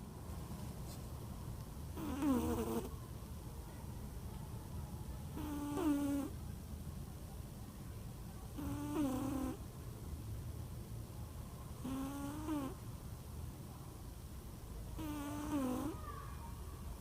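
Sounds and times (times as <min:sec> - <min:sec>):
cat snoring: 0:02.0 - 0:02.9, 0:05.4 - 0:06.3, 0:08.6 - 0:09.6, 0:11.8 - 0:12.8, 0:15.0 - 0:16.0.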